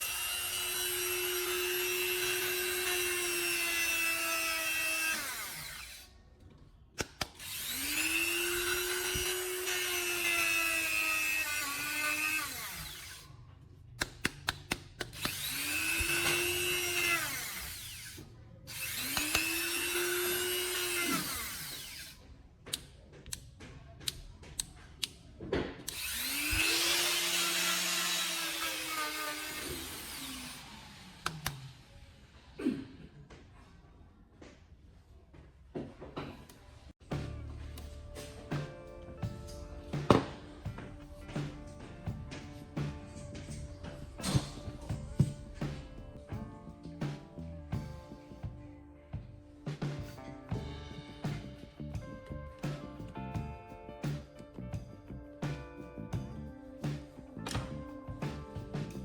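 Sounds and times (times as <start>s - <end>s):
electric grinder motor whining: 0.0s - 6.1s, 7.2s - 13.3s, 15.0s - 22.2s, 25.9s - 32.4s
clicks and taps: 14.0s - 15.4s.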